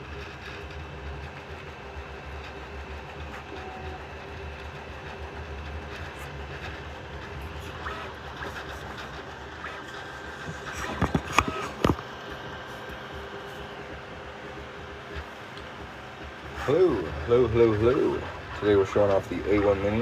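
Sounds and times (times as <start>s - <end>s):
printer mechanical hum: 0.0s - 20.0s.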